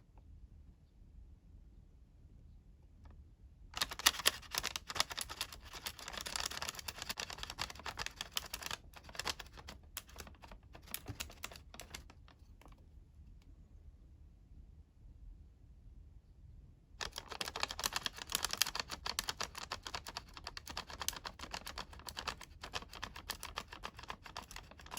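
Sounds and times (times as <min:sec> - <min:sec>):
paper being folded and creased: 0:03.8 - 0:12.6, 0:17.0 - 0:24.9.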